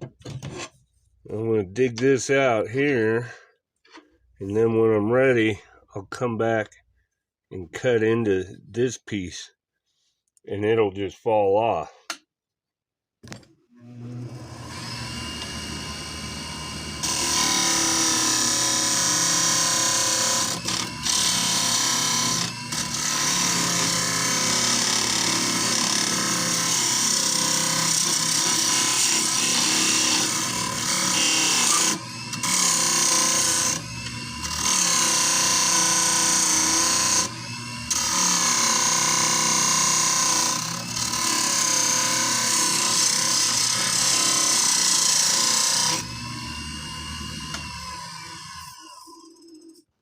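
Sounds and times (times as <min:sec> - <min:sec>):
tool scraping and cutting wood: 0:00.0 - 0:01.3, 0:14.2 - 0:50.0
lathe motor whine: 0:13.8 - 0:49.8.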